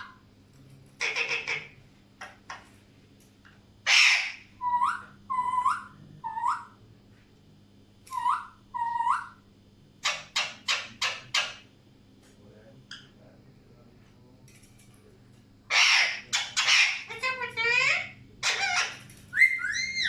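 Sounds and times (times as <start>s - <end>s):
parakeet squawking and calling: 0.0s - 0.2s, 1.0s - 1.8s, 3.8s - 6.8s, 8.1s - 9.4s, 10.0s - 11.6s, 15.7s - 20.0s.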